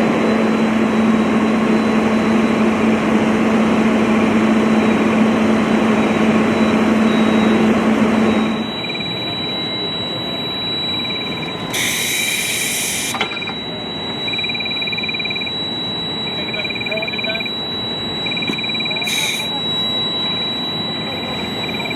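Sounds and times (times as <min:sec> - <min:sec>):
rapid pulsed alarm beeping: 0:04.4 - 0:21.9
high electronic tone: 0:08.2 - 0:21.9
loud engine running: 0:18.5 - 0:19.8.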